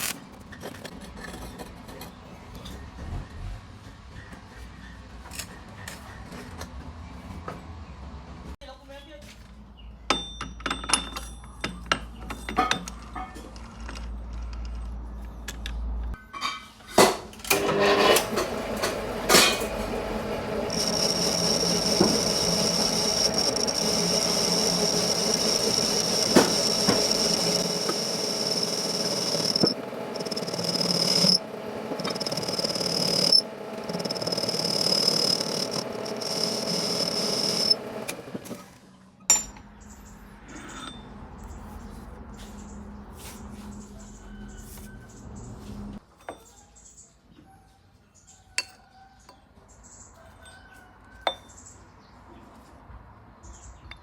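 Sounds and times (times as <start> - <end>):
power tool whine: 17.5 - 38.6.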